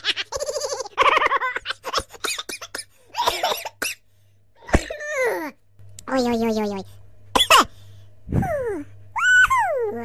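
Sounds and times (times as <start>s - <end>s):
high-pitched cartoon laughter: 0.0s - 2.7s.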